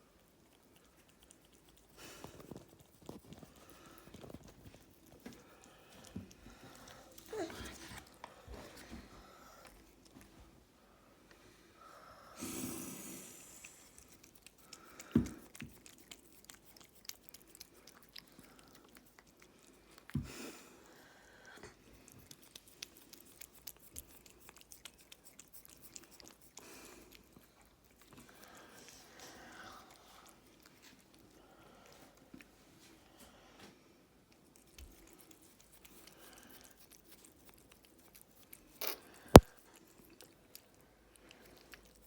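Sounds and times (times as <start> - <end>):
cat licking and chewing: 0.0 - 11.6, 12.4 - 33.2, 34.2 - 42.0.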